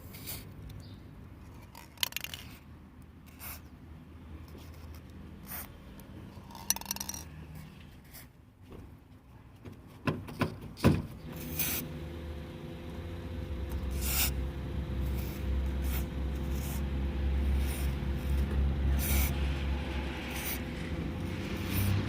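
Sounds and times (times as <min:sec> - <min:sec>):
low engine hum: 0:11.2 - 0:22.0.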